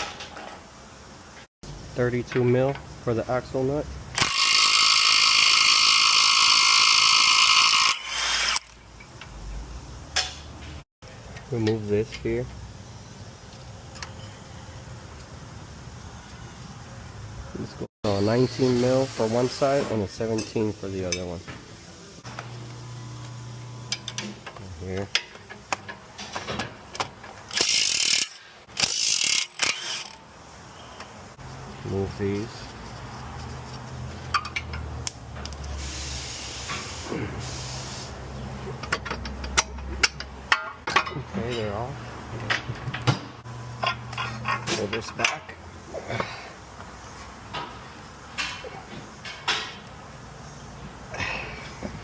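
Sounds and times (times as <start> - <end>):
socket ratchet clicking: 27.5 - 30.2
tool clicks: 27.5 - 30.2.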